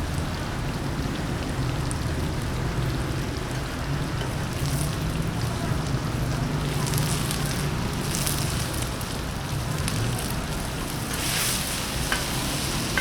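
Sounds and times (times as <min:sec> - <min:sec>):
food sizzling in a wok: 0:03.9 - 0:13.0
crackles: 0:06.6 - 0:13.0.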